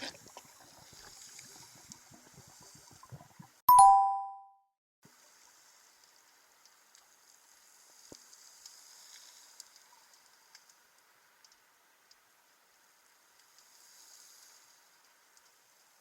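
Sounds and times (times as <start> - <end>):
high-pitched underwater clicks: 3.7 - 4.4
soft hiss: 5.1 - 16.0.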